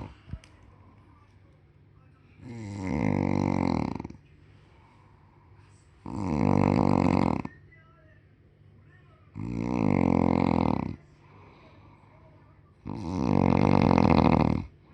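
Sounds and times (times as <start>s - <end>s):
quiet breathing: 0.0s - 1.5s, 2.2s - 7.6s, 9.9s - 14.9s
loud snoring: 2.4s - 4.2s, 6.0s - 7.5s, 9.4s - 11.0s, 12.8s - 14.7s.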